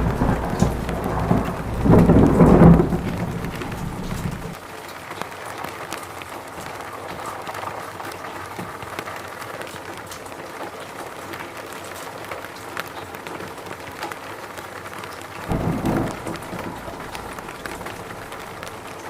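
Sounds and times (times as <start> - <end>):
low rumble: 0.0 - 4.6, 15.4 - 18.8
rain falling in forest: 0.0 - 19.0.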